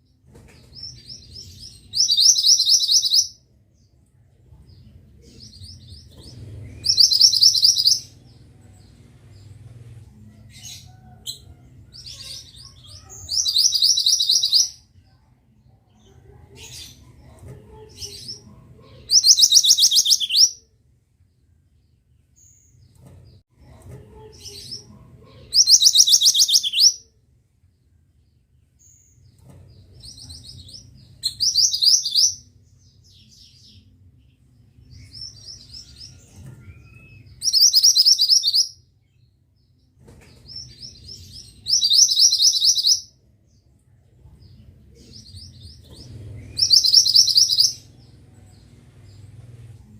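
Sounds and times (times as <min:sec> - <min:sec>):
soft bird chirps: 0:00.0 - 0:09.9, 0:10.5 - 0:14.8, 0:18.0 - 0:20.7, 0:24.4 - 0:27.1, 0:28.8 - 0:34.0, 0:34.8 - 0:49.7.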